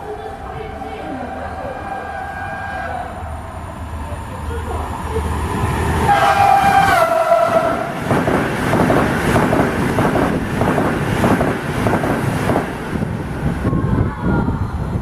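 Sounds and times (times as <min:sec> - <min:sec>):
train passing at speed: 0:00.0 - 0:15.0
wind buffeting microphone: 0:03.0 - 0:15.0.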